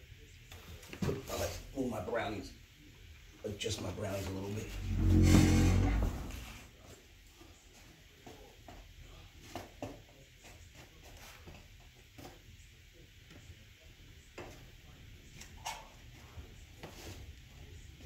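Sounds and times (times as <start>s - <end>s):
faint low rumble: 4.6s - 6.6s.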